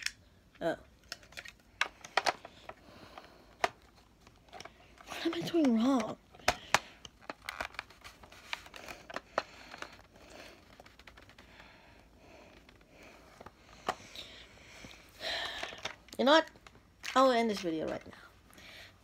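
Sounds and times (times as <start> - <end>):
faint crinkling: 1.0 - 18.6
plastic clicks and knocks: 1.1 - 2.8.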